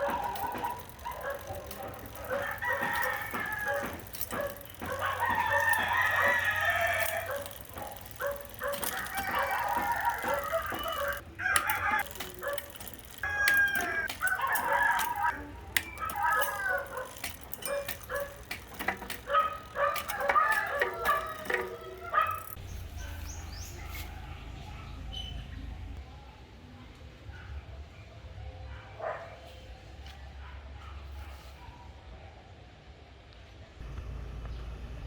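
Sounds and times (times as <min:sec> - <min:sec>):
rooster crowing: 0:01.5 - 0:18.3, 0:19.3 - 0:22.4.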